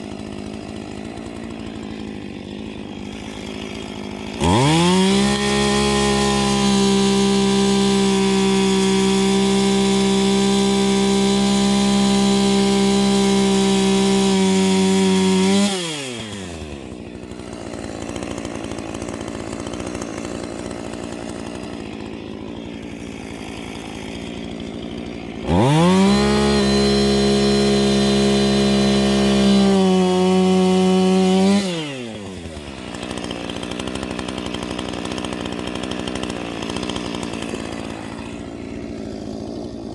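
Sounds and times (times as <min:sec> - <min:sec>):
chainsaw revving and idling: 0:00.0 - 0:39.9.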